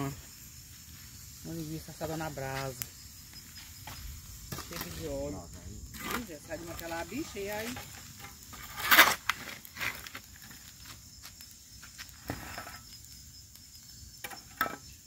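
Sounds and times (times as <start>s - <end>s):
embers raked out of bonfire: 0.0s - 15.0s
insects chirping: 0.0s - 15.0s.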